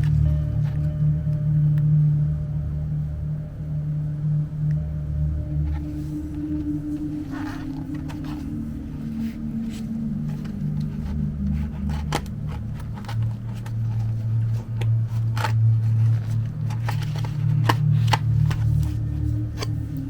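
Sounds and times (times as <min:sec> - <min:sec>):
packaging rustling: 0:05.7 - 0:20.0.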